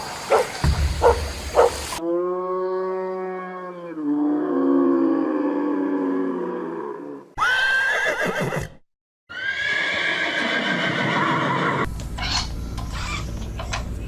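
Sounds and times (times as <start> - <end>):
horse whinnying: 7.4 - 11.9.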